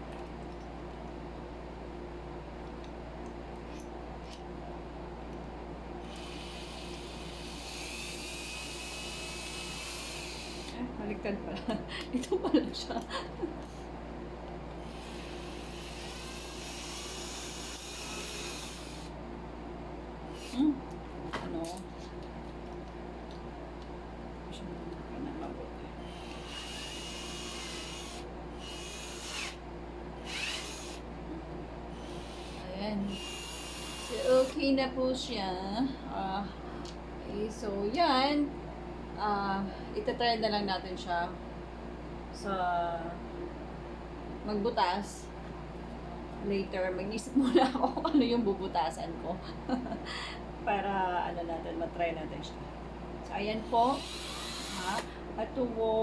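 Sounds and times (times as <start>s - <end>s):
cordless drill motor whining: 6.0s - 10.9s, 14.8s - 19.2s, 20.3s - 20.8s, 26.0s - 29.6s, 30.2s - 31.1s, 31.9s - 34.6s, 53.6s - 55.2s
drill parts clicking: 54.0s - 55.1s.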